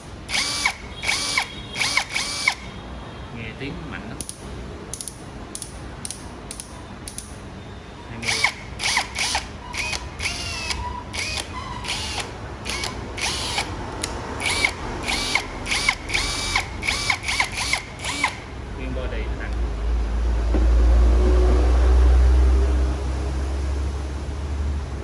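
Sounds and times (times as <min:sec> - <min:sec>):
cordless drill motor whine: 0:00.3 - 0:02.6, 0:08.2 - 0:13.8, 0:14.4 - 0:18.4.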